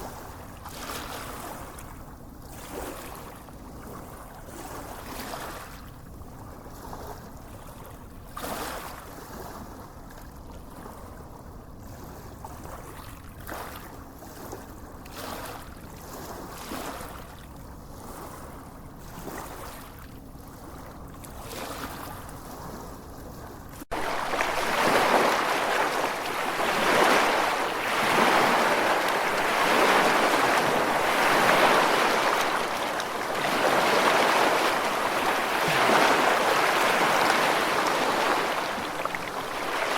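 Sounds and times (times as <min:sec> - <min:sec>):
waves washing onto beach: 0:23.8 - 0:39.9.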